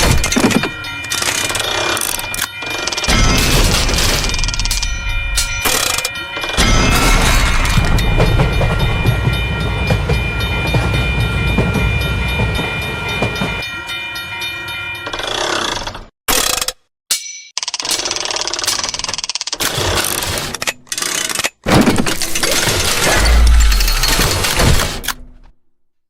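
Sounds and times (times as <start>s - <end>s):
train rumbling past: 7.1s - 13.7s.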